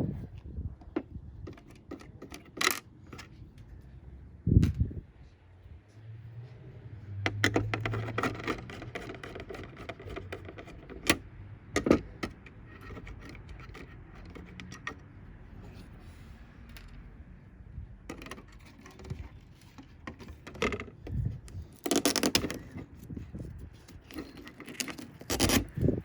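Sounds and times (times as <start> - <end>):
small parts clicking and rattling: 1.4 - 3.4, 7.3 - 15.8, 18.1 - 26.0.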